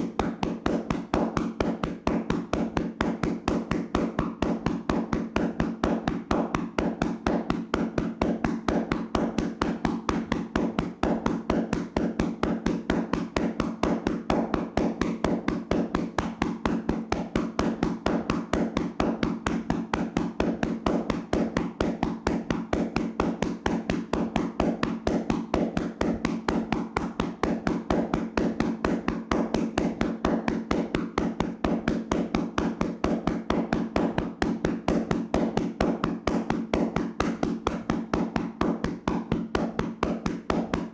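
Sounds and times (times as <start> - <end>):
hands slapping on body: 12.6 - 40.9.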